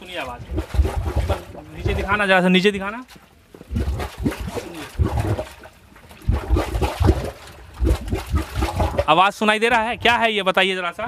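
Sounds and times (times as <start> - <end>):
gas bubbling through water: 0.2 - 2.3, 3.6 - 9.2.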